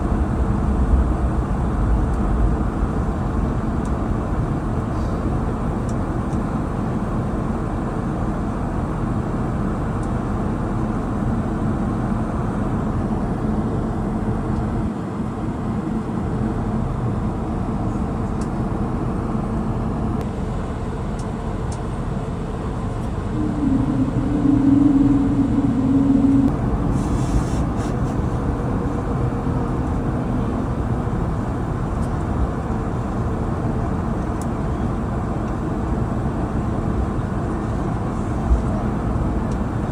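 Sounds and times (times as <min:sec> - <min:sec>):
aircraft cabin rumble: 0:00.0 - 0:09.6, 0:17.0 - 0:39.9
loud steady hum: 0:22.6 - 0:31.0.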